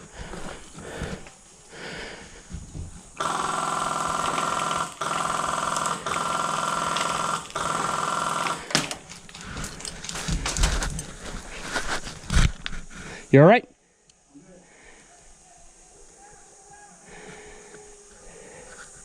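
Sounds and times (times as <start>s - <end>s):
airsoft gun firing full auto: 3.2s - 9.4s.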